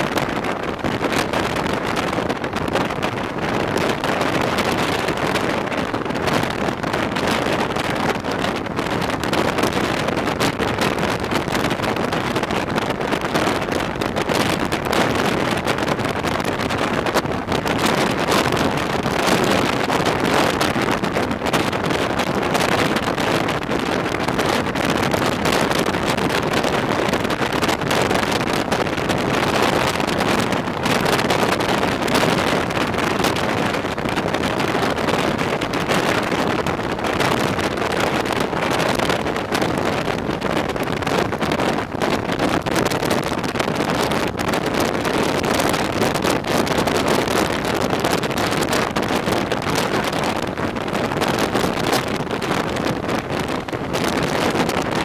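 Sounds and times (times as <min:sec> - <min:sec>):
wind rushing over microphone: 0:00.0 - 0:55.0.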